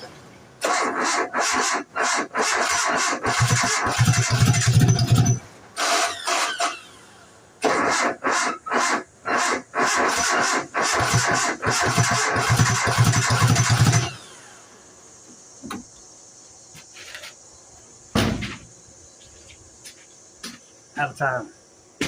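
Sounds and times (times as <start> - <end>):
engine firing unevenly: 0.0 - 16.1
engine cranking on starter: 0.6 - 14.6.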